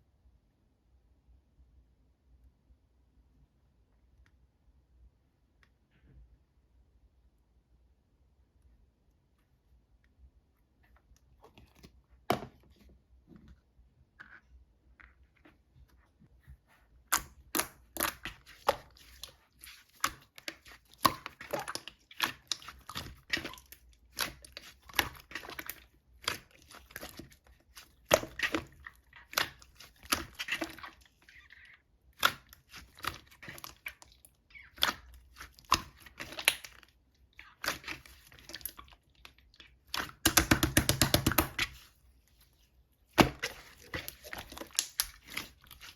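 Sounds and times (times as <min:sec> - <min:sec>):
slime squishing with clicks and pops: 0:17.0 - 0:42.0, 0:43.2 - 0:45.9.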